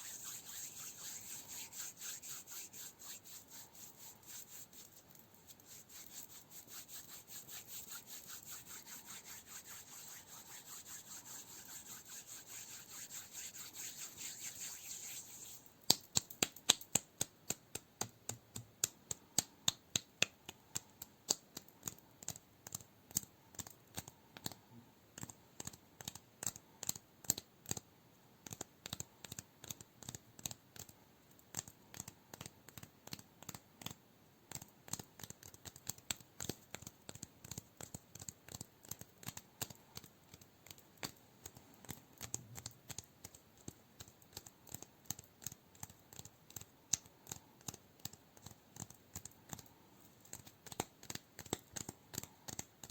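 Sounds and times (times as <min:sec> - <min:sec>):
scratching on cork: 0:00.0 - 0:16.0.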